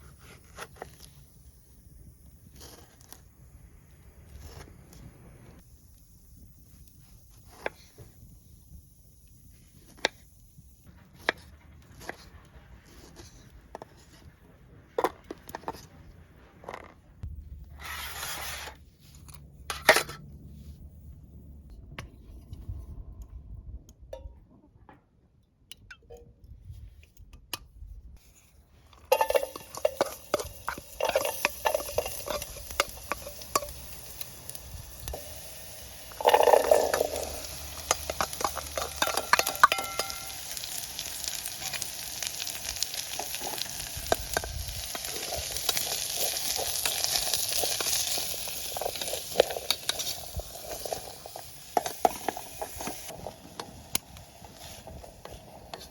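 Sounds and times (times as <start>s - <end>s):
food sizzling in a pan: 29.1s - 55.9s.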